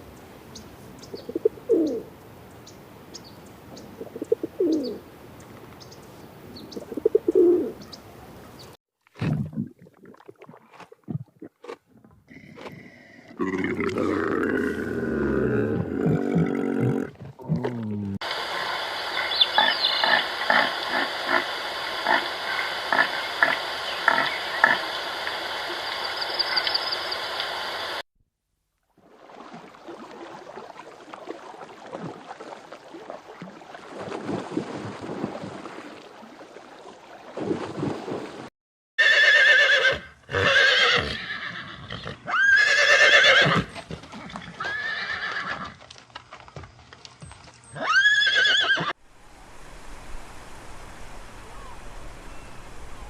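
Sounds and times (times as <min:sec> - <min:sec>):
horses whinnying: 0:39.0 - 0:45.8, 0:47.7 - 0:49.0.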